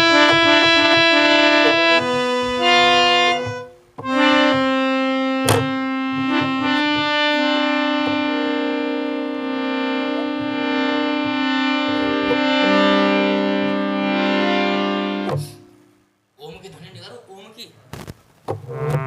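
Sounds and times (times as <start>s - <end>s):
reedy keyboard chords: 0.0s - 16.3s, 18.5s - 19.0s.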